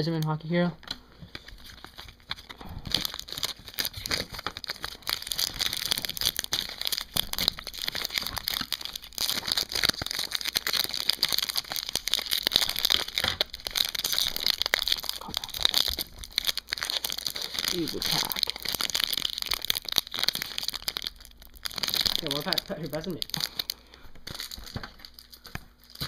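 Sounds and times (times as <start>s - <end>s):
foil wrappers crinkling and tearing: 1.2s - 26.0s
cards riffled by hand: 16.8s - 18.6s.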